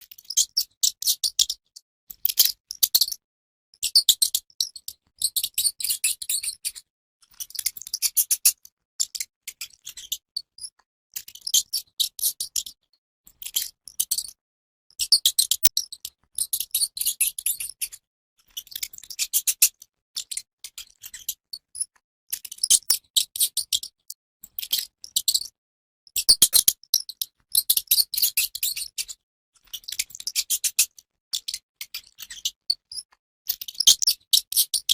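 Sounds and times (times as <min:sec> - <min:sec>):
mouse scratching: 0:26.3 - 0:26.6, 0:33.8 - 0:34.1.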